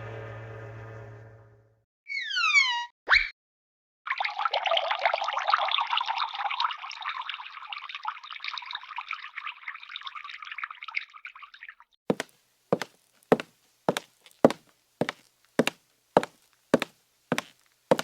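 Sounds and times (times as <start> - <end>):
water bubbling and dripping: 4.1 - 12.0.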